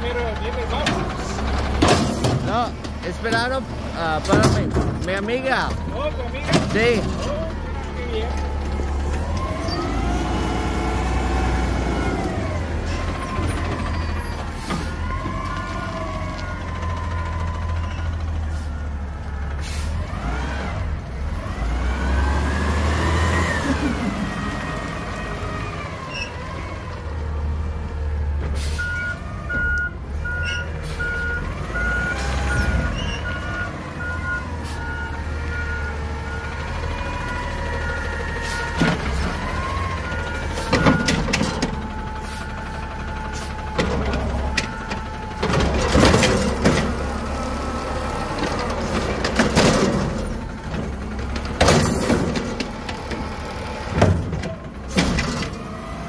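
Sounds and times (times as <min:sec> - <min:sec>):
diesel engine revving: 0:00.0 - 0:56.0.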